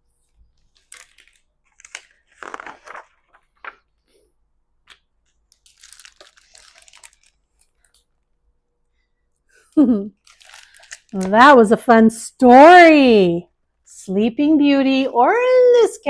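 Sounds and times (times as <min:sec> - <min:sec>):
picture book paper rustling: 0:00.1 - 0:08.3, 0:09.4 - 0:11.9.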